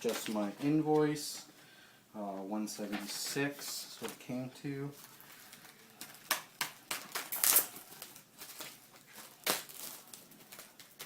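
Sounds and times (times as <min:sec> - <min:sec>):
packaging crinkling and rustling: 0:00.0 - 0:01.1, 0:04.9 - 0:11.0.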